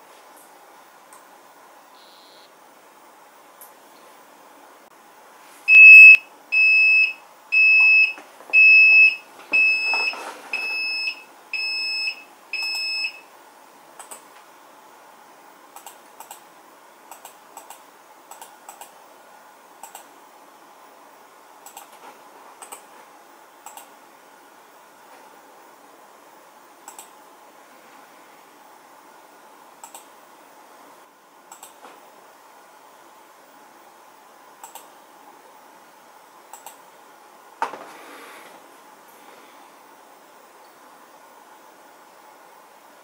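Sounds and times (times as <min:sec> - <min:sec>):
short high buzzer beeps: 0:02.0 - 0:02.5, 0:05.7 - 0:10.0.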